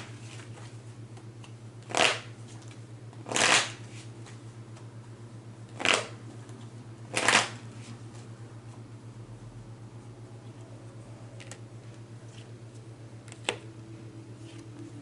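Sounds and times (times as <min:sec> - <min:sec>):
low electrical hum: 0:00.0 - 0:15.0
cards being shuffled: 0:01.4 - 0:04.8, 0:05.7 - 0:08.3.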